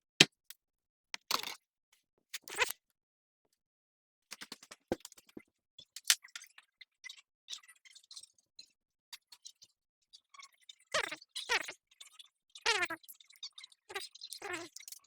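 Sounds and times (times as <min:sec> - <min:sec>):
small clicks taps and scrapes: 0:01.2 - 0:01.6, 0:04.3 - 0:06.2.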